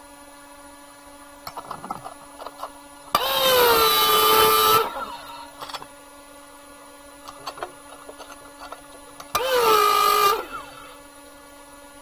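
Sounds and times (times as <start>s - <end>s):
metal handling clicks and knocks: 1.5s - 3.3s, 4.2s - 6.0s, 7.2s - 9.5s
power tool motor whine: 1.5s - 5.9s, 7.3s - 11.4s.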